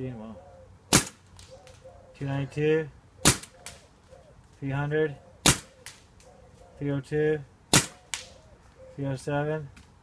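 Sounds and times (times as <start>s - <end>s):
paintball marker firing pops: 5.4s - 6.1s, 7.7s - 8.4s.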